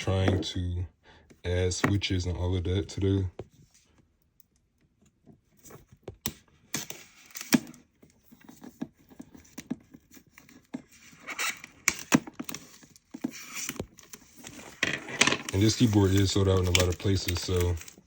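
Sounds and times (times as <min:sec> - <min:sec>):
packaging being handled: 0:06.7 - 0:18.0
rustling and scraping: 0:06.9 - 0:18.0.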